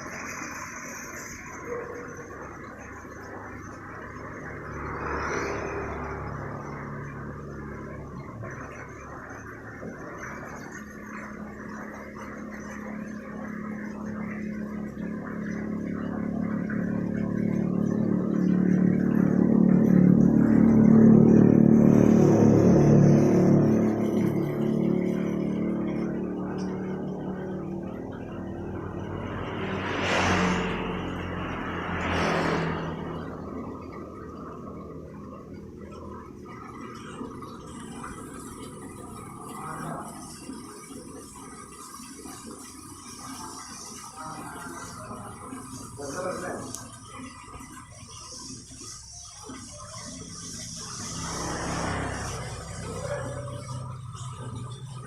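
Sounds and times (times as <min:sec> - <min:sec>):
motor humming: 0:00.0 - 0:55.0
small waterfall splashing: 0:00.0 - 0:55.0
hiss of falling water: 0:37.7 - 0:55.0.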